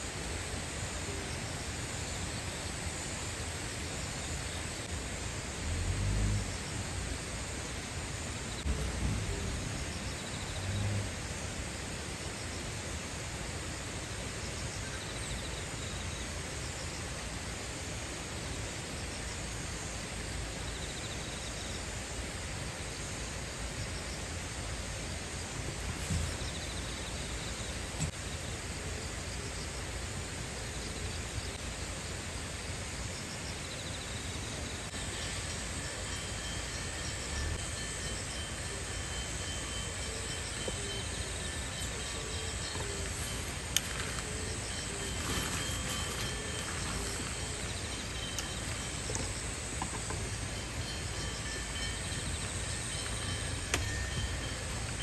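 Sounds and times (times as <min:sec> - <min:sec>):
faint insect chirping: 0:00.0 - 0:55.0
steady hiss: 0:00.0 - 0:55.0
faint high chirping: 0:33.6 - 0:55.0.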